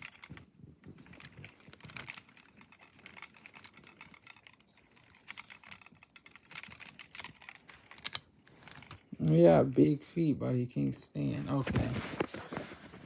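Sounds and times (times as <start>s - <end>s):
plastic action figure clicks and rattles: 0.0s - 9.4s.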